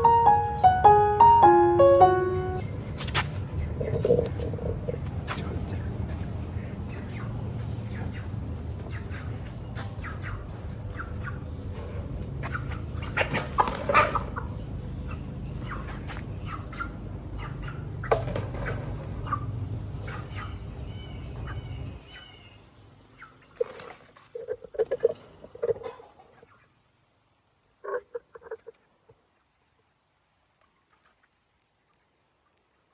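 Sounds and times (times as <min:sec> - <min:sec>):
short high chirps: 0:00.0 - 0:02.7
chickens clucking: 0:06.8 - 0:20.6, 0:23.2 - 0:26.7.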